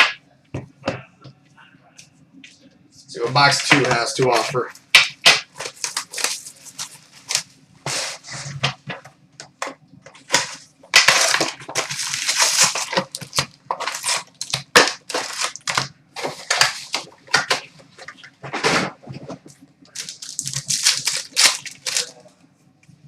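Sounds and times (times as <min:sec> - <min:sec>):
plastic packaging crinkling: 0:03.2 - 0:22.3
packaging tearing: 0:05.3 - 0:08.5, 0:10.2 - 0:18.1, 0:19.9 - 0:22.2.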